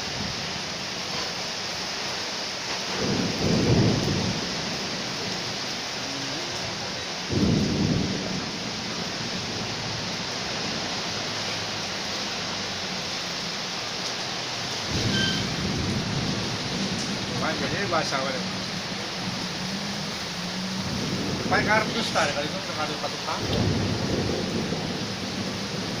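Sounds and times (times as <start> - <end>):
heavy rain pouring: 0.0 - 26.0
low rumbles: 14.7 - 26.0.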